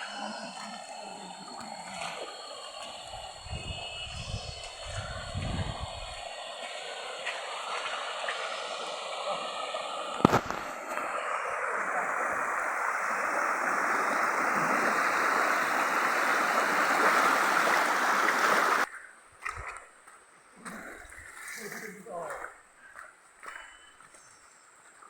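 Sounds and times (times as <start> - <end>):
stream water rushing: 6.2 - 18.9.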